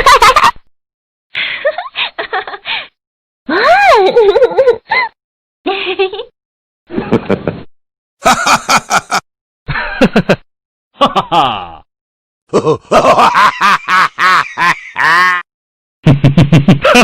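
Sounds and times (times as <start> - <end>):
laugh sound effects: 6.9 - 10.4, 12.5 - 15.4, 16.0 - 17.0.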